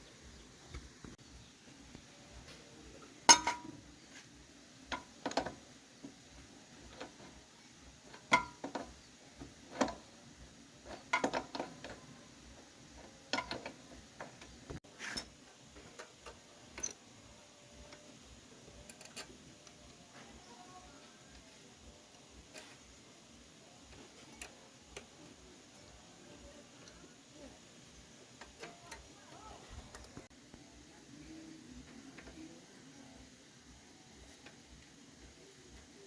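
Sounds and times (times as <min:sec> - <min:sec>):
faint steady ticking: 0:00.0 - 0:36.0
metal tools clinking and knocking: 0:03.3 - 0:03.8, 0:16.7 - 0:17.0.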